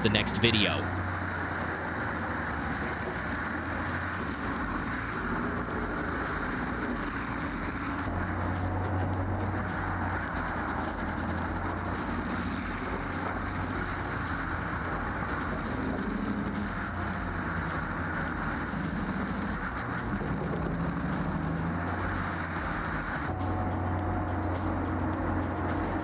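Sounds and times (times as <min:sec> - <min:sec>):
heavy machine engine running: 0:00.0 - 0:26.0.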